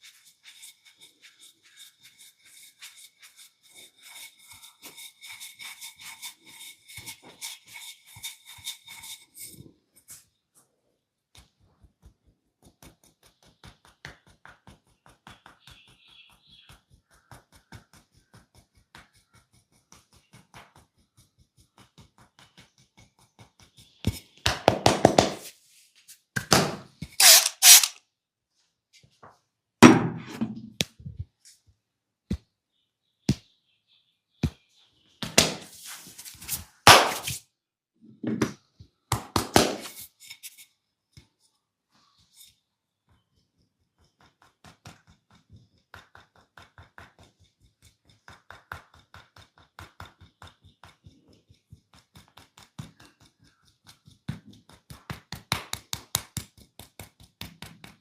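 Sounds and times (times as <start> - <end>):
fingers scratching scalp: 0.0 - 9.5, 11.4 - 24.3, 27.2 - 27.9, 43.2 - 58.0
rapid slapping on head: 24.4 - 25.5, 36.9 - 37.4, 39.1 - 39.9, 54.3 - 58.0.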